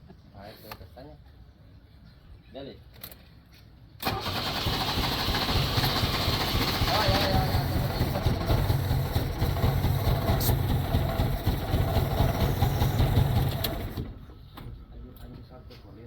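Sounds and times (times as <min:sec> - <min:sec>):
car engine misfiring and stalling: 0:04.0 - 0:14.3.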